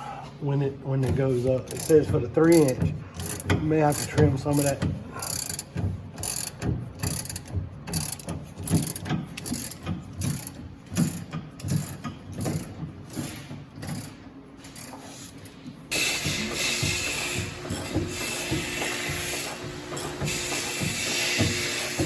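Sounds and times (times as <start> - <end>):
ratchet wrench clicking: 1.7 - 15.0.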